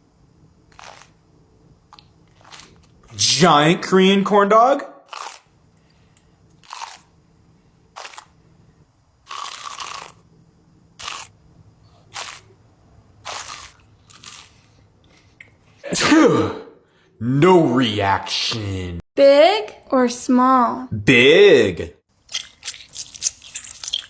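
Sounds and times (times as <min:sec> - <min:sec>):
crunchy biting and chewing: 0:00.7 - 0:01.2, 0:01.9 - 0:03.1, 0:05.1 - 0:05.5, 0:06.6 - 0:07.1, 0:07.9 - 0:08.3, 0:09.2 - 0:10.3, 0:11.0 - 0:11.4, 0:12.0 - 0:12.5, 0:13.2 - 0:14.8, 0:22.3 - 0:24.0.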